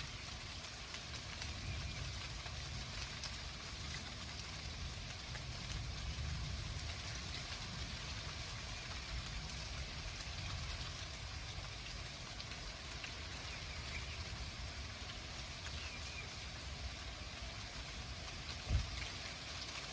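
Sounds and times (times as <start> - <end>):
rain falling steadily: 0.0 - 19.9
low thunder rumble: 1.4 - 11.7.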